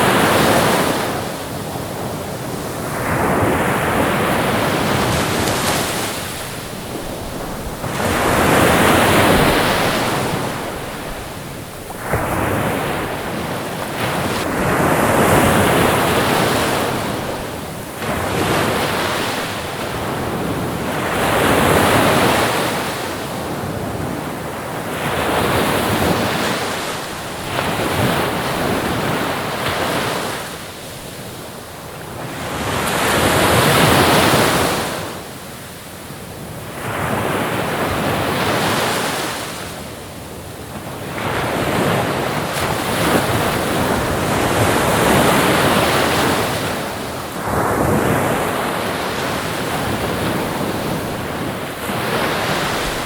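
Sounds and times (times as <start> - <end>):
ocean waves washing onto shore: 0.0 - 53.0.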